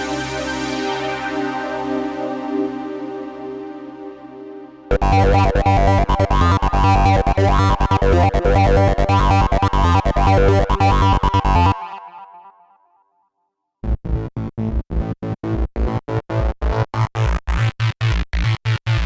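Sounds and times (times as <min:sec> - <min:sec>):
sustained synth pad: 0:00.0 - 0:11.6
synthesizer rhythmic pattern: 0:00.0 - 0:12.6
deep pulsing bass: 0:03.5 - 0:11.8.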